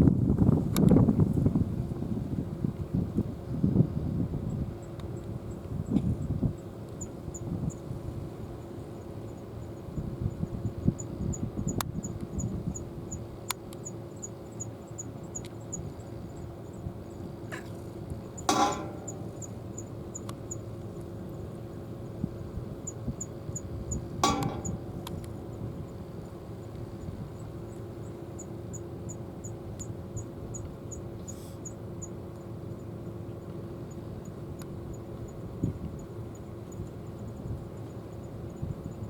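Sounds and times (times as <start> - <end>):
steady low hum: 0.0 - 39.0
faint high ticks: 15.3 - 15.6
sharp ringing knocks: 18.5 - 19.9, 24.2 - 25.5.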